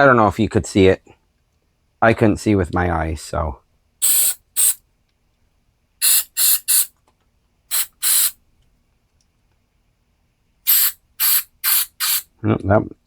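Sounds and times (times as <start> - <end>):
aerosol spray squirts: 4.0 - 4.8, 6.0 - 6.9, 7.7 - 8.4, 10.7 - 12.3.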